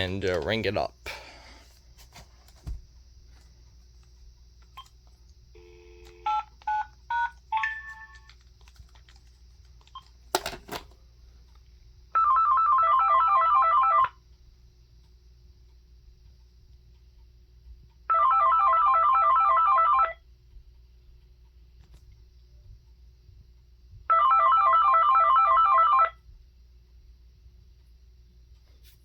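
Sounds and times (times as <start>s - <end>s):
dial tone: 5.6s - 6.4s, 12.2s - 14.2s, 18.1s - 20.2s, 24.1s - 26.2s
cordless phone ringing: 12.2s - 14.2s, 18.1s - 20.2s, 24.1s - 26.2s.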